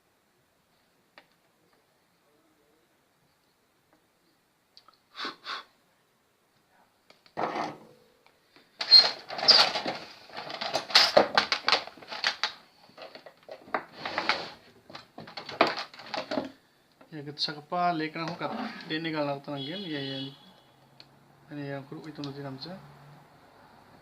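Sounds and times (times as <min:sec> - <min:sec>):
hand tools clattering and scraping: 0:07.4 - 0:08.0, 0:08.8 - 0:16.6.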